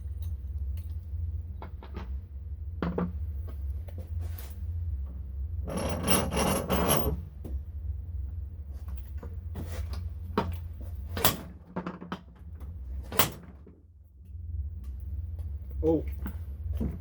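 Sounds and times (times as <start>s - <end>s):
scraping strokes on metal parts: 5.7s - 7.2s.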